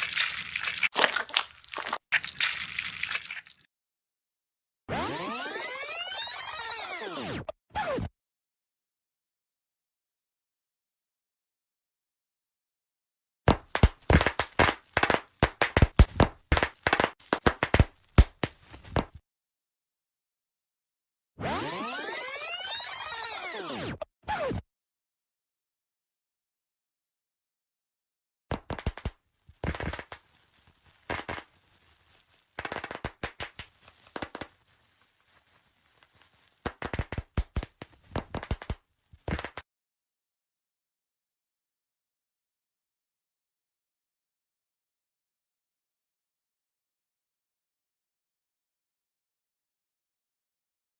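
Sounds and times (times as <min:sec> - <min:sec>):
sharp pops and cracks: 0:00.0 - 0:03.6, 0:13.5 - 0:19.2, 0:28.5 - 0:39.6
brittle objects crushed under tyre: 0:29.6 - 0:34.8.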